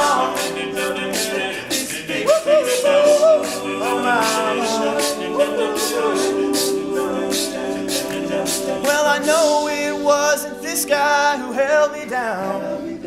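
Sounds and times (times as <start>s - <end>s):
steady beat: 0.0s - 10.8s
male a cappella harmonies: 0.0s - 13.0s.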